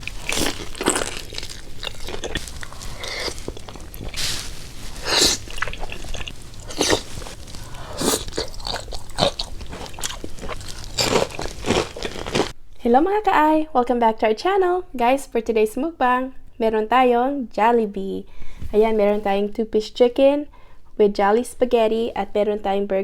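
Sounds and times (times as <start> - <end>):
chewing crunchy food: 0.0 - 12.6.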